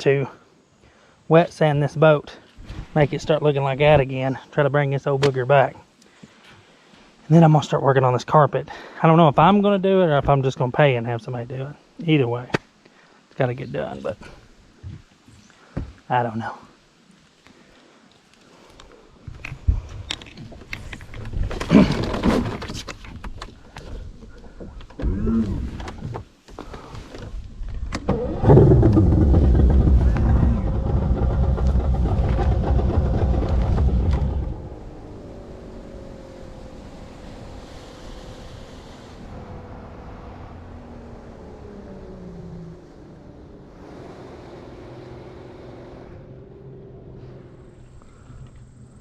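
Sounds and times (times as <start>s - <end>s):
whine sliding down in pitch: 28.0s - 44.8s
boat motor running: 28.0s - 49.0s.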